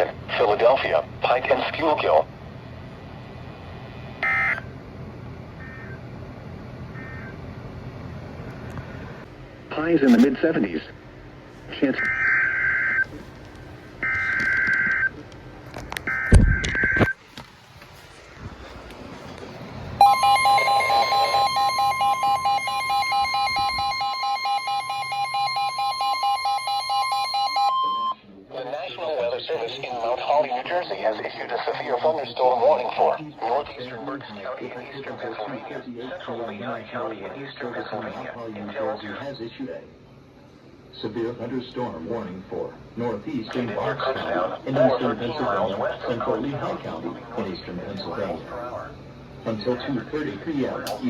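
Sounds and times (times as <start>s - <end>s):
low radio hiss: 0.0s - 12.2s, 17.0s - 23.9s, 27.9s - 51.0s
steady warning alarm tone: 3.6s - 4.7s, 11.7s - 13.2s, 13.9s - 15.2s, 16.0s - 17.1s, 19.6s - 28.3s
weather radio alert beeping: 4.2s - 4.7s, 10.0s - 10.4s, 11.8s - 13.2s, 14.0s - 15.1s, 16.0s - 17.2s, 19.9s - 28.3s.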